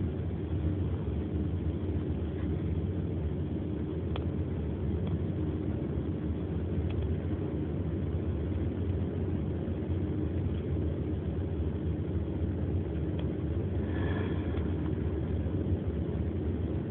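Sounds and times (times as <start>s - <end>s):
car engine and road noise: 0.0s - 16.9s.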